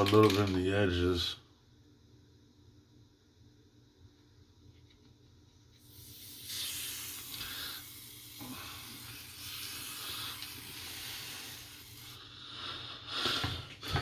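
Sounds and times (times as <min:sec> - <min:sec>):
aerosol spray hissing: 0:05.8 - 0:12.2.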